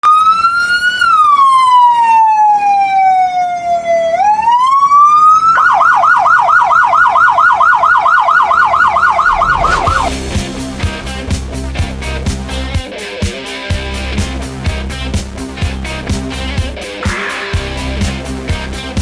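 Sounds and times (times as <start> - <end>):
electronic police siren: 0.0 - 10.2.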